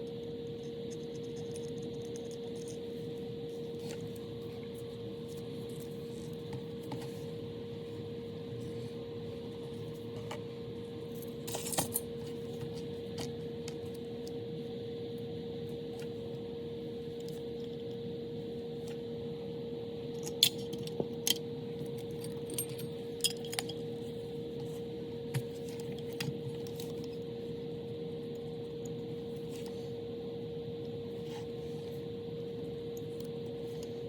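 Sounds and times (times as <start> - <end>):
steady low hum: 0.0 - 34.0
small metal parts clinking: 11.4 - 12.1, 22.1 - 23.8.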